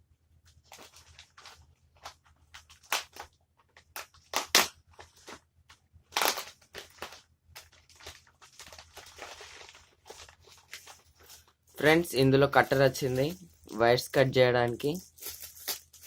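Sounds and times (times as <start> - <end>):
packaging crackling and crunching: 0.6 - 5.4, 6.1 - 12.1, 14.7 - 16.0
packaging rustle: 0.6 - 11.9, 14.8 - 16.0.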